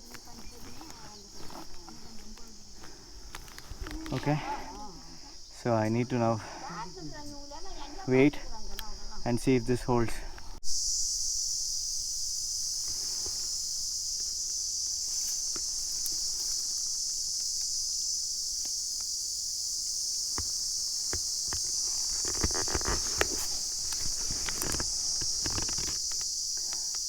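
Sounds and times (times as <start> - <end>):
scuffing noises: 0.0 - 4.3, 20.4 - 26.0
insects chirping: 0.0 - 27.0.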